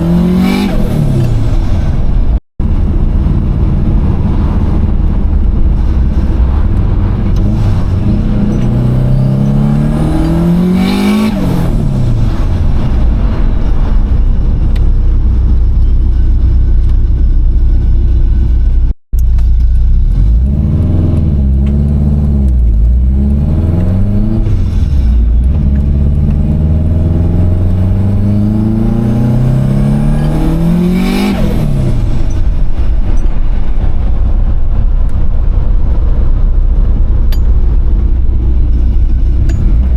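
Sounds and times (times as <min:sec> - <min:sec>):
car engine revving hard: 0:00.0 - 0:01.9, 0:03.5 - 0:13.2, 0:20.1 - 0:32.4.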